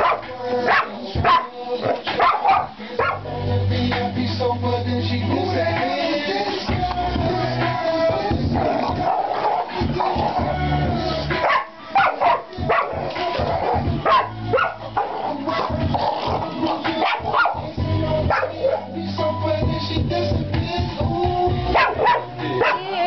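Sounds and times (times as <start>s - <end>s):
puppy barking: 0.0s - 3.2s, 11.4s - 13.0s, 13.6s - 15.8s, 16.8s - 17.7s, 18.3s - 18.9s, 21.8s - 23.0s
loud background music: 0.0s - 23.0s.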